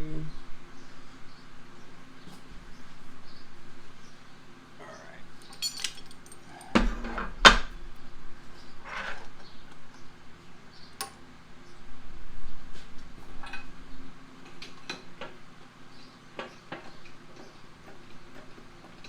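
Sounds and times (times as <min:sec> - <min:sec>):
metal objects rattling and clanking: 0:05.5 - 0:07.6.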